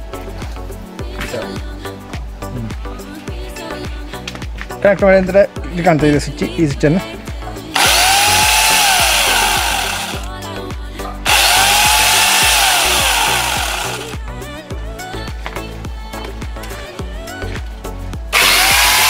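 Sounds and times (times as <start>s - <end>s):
angle grinder motor whine: 7.8s - 10.3s, 11.3s - 14.2s, 18.4s - 19.0s.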